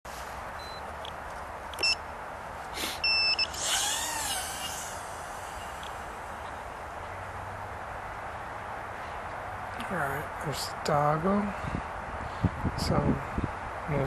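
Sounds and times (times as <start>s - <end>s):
short electronic beeps: 0.6s - 0.8s, 1.8s - 2.0s, 3.0s - 3.6s
steady hiss: 2.5s - 7.1s
rising and falling whine: 3.2s - 6.9s.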